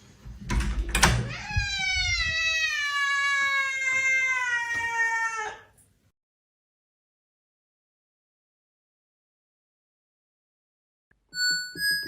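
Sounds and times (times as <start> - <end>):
cat meowing: 1.2 - 5.8.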